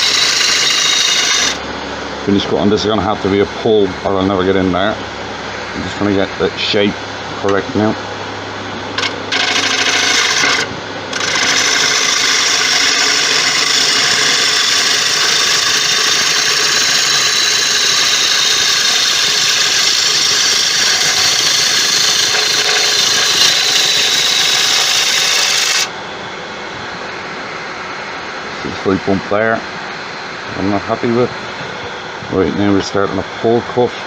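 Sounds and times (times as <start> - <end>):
lathe tool scraping wood: 0.0 - 1.6, 9.0 - 25.9.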